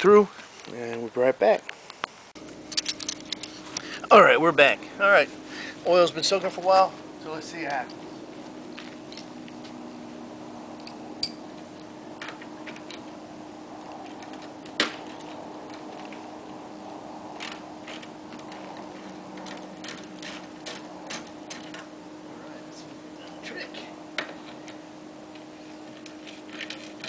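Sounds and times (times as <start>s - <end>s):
steady low hum: 0.0s - 27.0s
hand tools clicking on bolts: 17.4s - 21.9s.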